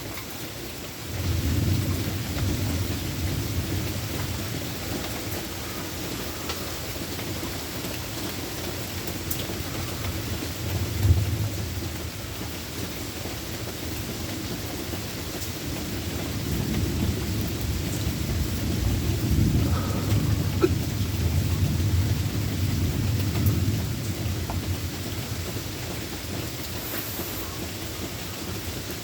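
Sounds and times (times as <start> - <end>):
steady rain: 0.0 - 29.0
rolling thunder: 1.1 - 5.8, 9.7 - 12.5, 15.6 - 26.5.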